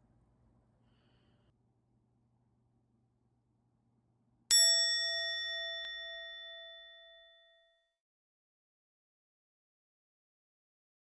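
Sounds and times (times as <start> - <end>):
bell-like ding: 4.5 - 7.8.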